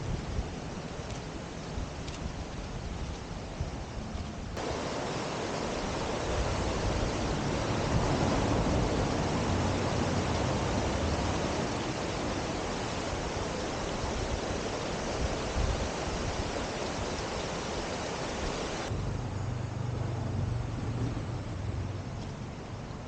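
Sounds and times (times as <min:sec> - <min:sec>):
mountain stream rushing: 0:04.4 - 0:19.0.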